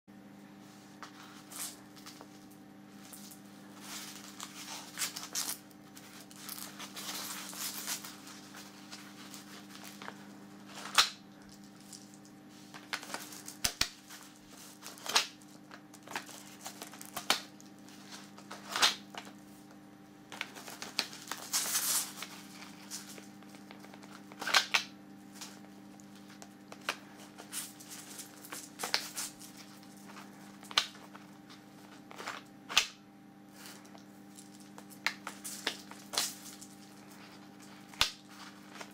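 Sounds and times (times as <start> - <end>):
cardboard pouch rustling: 3.0 - 19.4, 20.4 - 24.6, 25.2 - 32.4.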